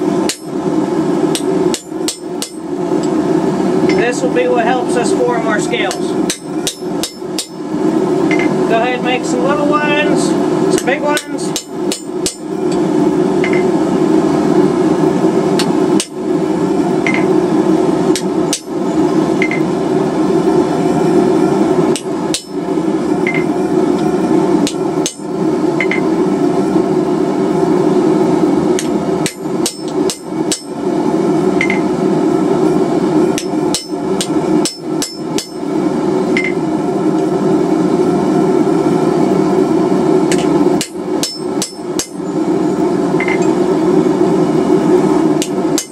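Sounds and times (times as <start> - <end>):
hammer striking chisel on steel: 29.2 - 30.7, 33.4 - 35.6, 40.3 - 42.2.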